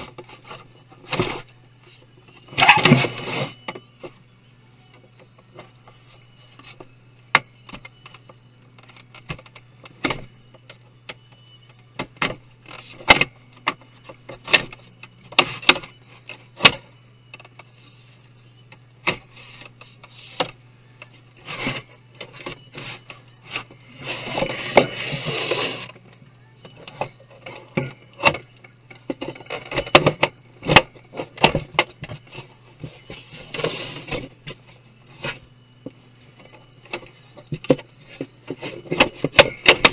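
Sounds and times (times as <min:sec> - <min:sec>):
steady low hum: 0:00.0 - 0:39.9
scraping and rubbing: 0:02.6 - 0:03.6, 0:21.4 - 0:26.0, 0:32.2 - 0:35.4.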